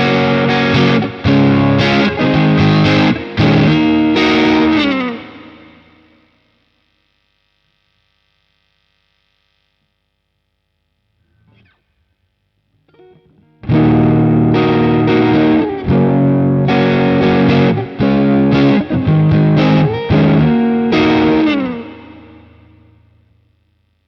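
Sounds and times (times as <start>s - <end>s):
overdriven electric guitar chords: 0.0s - 7.2s, 11.3s - 12.0s, 12.7s - 23.8s.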